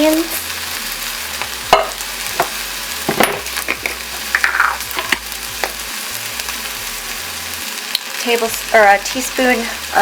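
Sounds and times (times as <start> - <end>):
food sizzling in frying pan: 0.0 - 10.0.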